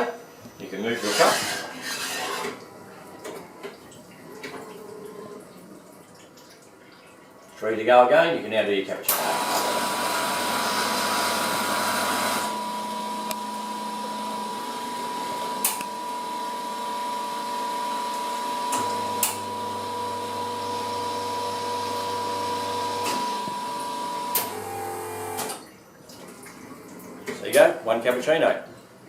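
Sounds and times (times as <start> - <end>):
espresso machine whine and hiss: 9.1 - 25.6.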